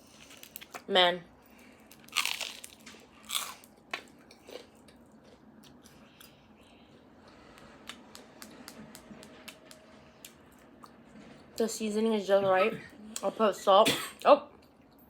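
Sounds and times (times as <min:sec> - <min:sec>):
person chewing food: 0:01.8 - 0:08.5.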